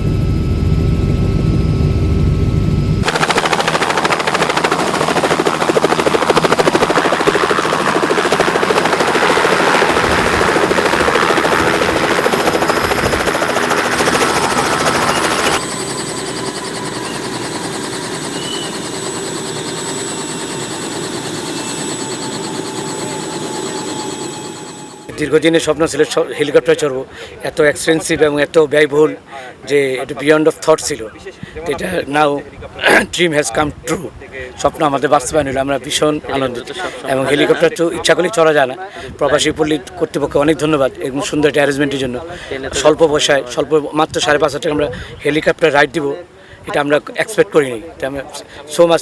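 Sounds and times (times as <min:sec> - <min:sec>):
helicopter rotor chopping: 0:00.0 - 0:25.4.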